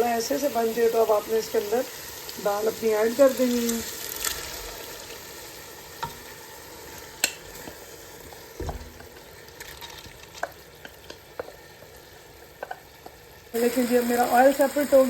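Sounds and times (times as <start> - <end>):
lentils sizzling in a pan: 0.0 - 15.0
spoon stirring against pan: 5.5 - 13.4.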